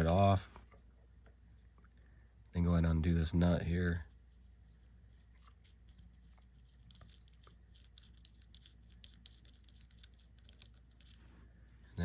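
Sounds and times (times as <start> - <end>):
nut unscrewing clicks and scrapes: 5.4 - 11.2.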